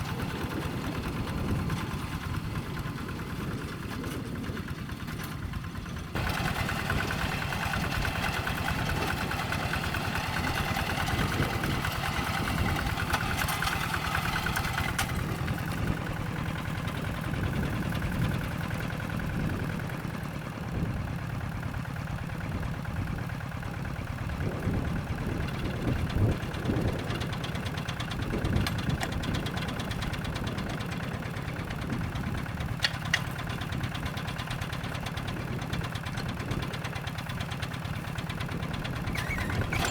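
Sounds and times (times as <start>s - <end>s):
diesel engine running under load: 0.0s - 39.9s.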